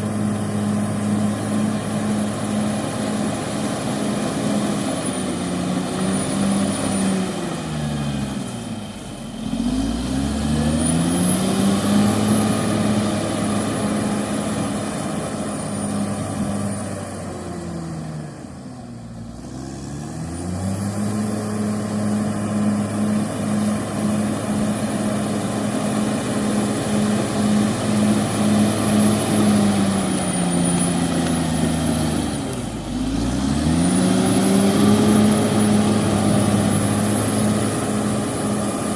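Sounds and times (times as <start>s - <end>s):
bulldozer diesel engine: 0.0s - 38.9s.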